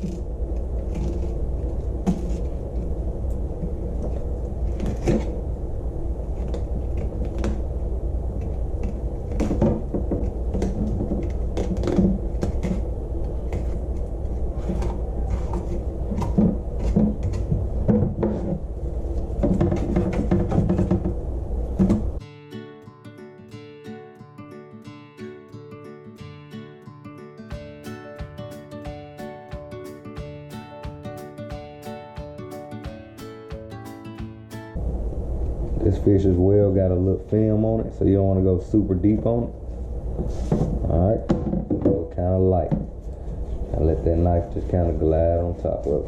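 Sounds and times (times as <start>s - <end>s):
low hum: 0.0s - 22.2s, 34.8s - 45.9s.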